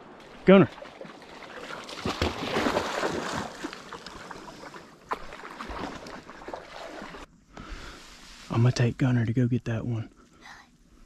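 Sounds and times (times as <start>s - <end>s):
water splashing and sloshing: 0.0s - 7.3s.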